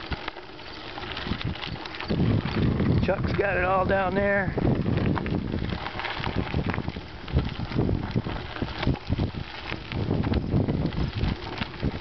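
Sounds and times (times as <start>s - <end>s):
bicycle knocks and rattles: 0.0s - 12.0s
wind buffeting microphone: 0.0s - 12.0s.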